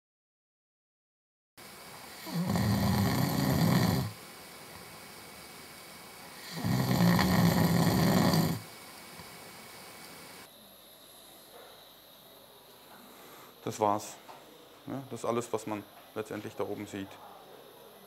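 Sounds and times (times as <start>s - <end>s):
man snoring: 2.0s - 4.2s, 6.2s - 8.7s.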